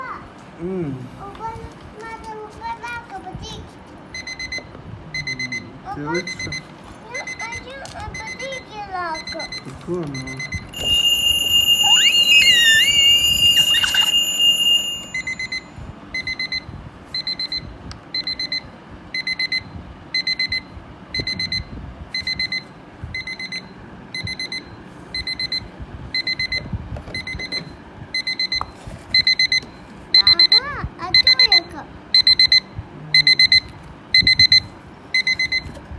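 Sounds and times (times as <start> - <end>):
electronic alarm beeping: 4.2 - 7.6, 8.2 - 26.6, 27.2 - 31.6, 32.2 - 35.8.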